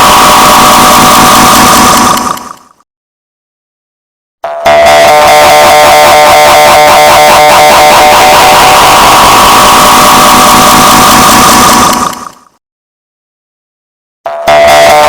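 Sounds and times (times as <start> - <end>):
pulsing stack of tones: 0.0 - 2.5, 6.5 - 12.3.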